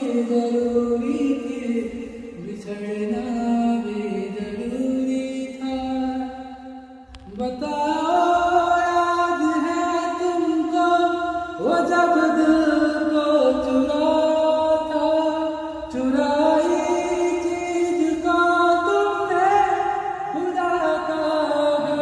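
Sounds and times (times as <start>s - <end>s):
man singing slow sad song: 0.0s - 22.0s.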